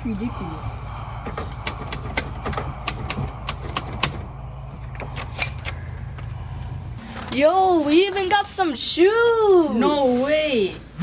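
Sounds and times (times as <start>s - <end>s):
steady low hum: 0.0s - 10.3s
typewriter keys clacking: 1.3s - 4.2s
typewriter bell ding: 5.4s - 6.0s.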